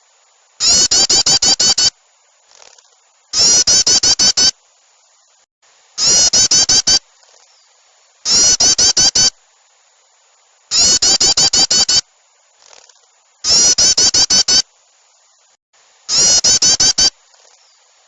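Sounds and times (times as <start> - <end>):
songbird alarm chatter: 0.6 - 1.9, 2.6 - 4.5, 6.0 - 9.3, 10.7 - 12.0, 12.6 - 14.6, 16.1 - 17.9.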